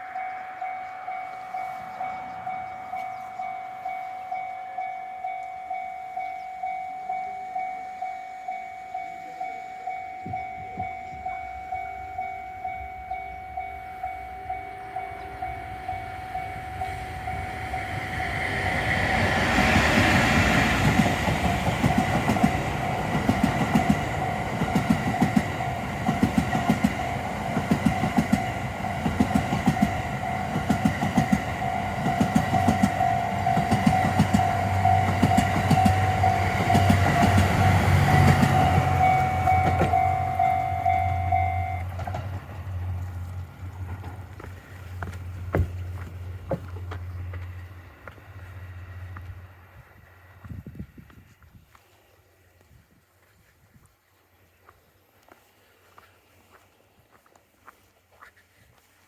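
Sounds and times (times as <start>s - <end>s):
crossing warning bell dinging: 0.0s - 50.2s
train rumble: 0.0s - 51.9s
wheels clacking over rail joints: 13.1s - 49.4s.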